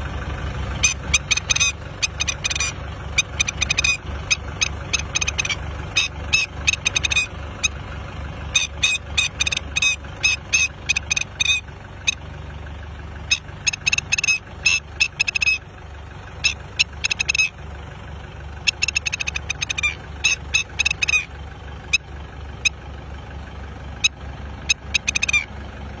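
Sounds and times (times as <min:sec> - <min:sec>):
tractor engine running: 0:00.0 - 0:26.0
birds calling in sharp high notes: 0:00.7 - 0:07.9, 0:08.5 - 0:12.3, 0:13.2 - 0:15.7, 0:16.3 - 0:17.6, 0:18.6 - 0:22.8, 0:24.0 - 0:25.6.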